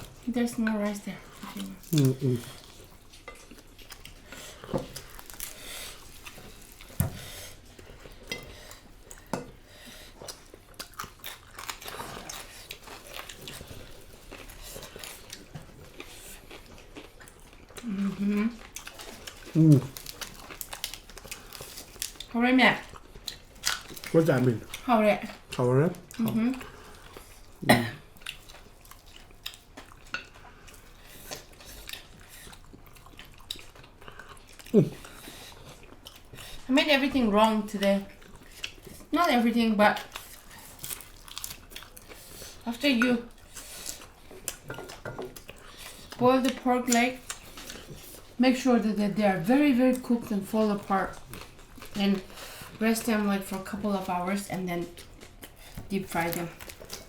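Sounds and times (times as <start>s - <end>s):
crunching crispy pork skin: 1.6s - 2.7s, 18.8s - 22.3s.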